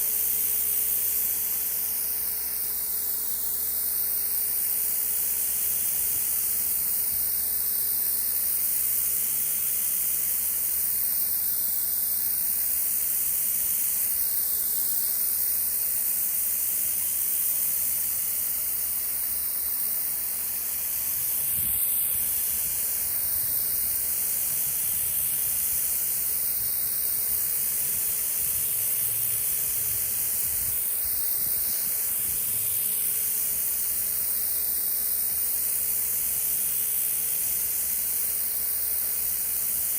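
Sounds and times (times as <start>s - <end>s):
pressure washer spraying concrete: 0.0s - 39.9s.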